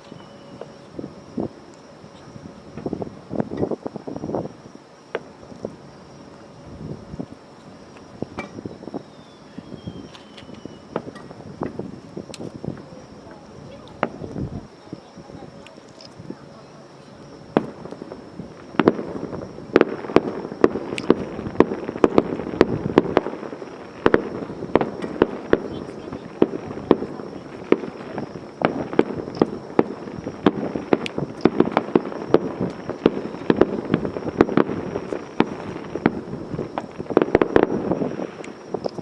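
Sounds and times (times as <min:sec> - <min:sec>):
rolling rumble: 0:00.0 - 0:39.0
fireworks shell bursts and crackling: 0:09.8 - 0:14.5, 0:17.4 - 0:39.0.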